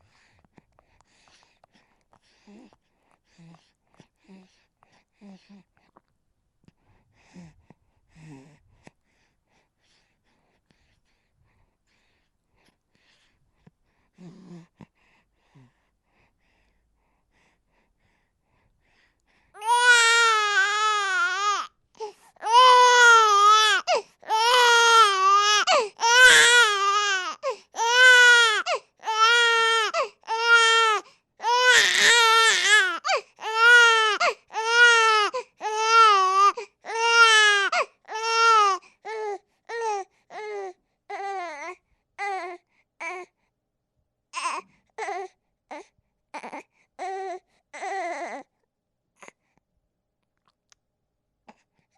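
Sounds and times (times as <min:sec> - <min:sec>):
infant crying: 0:19.6 - 0:43.3, 0:44.4 - 0:45.8, 0:46.4 - 0:48.5.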